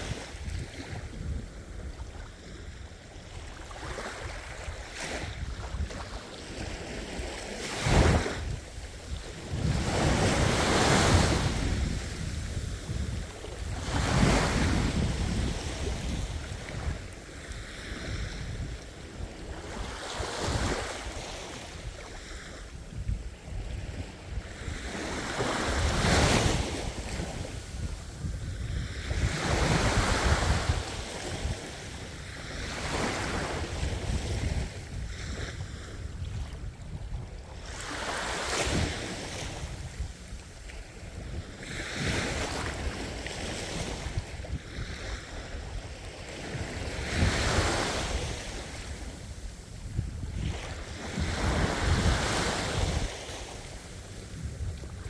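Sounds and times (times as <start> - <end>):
sea waves breaking: 0.0 - 18.7, 41.6 - 55.0.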